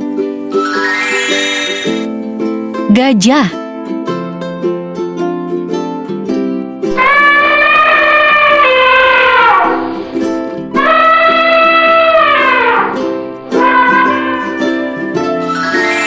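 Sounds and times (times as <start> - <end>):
ukulele background music: 0.0 - 0.6, 1.8 - 8.8, 9.4 - 16.0
elephant trumpeting: 7.0 - 10.1, 10.8 - 16.0.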